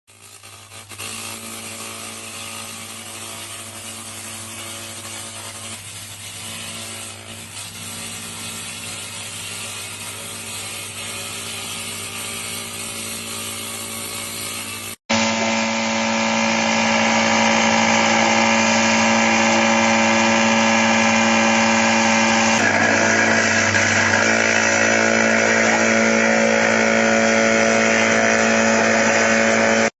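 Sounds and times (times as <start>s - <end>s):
milling machine spindle whining: 14.7s - 29.9s.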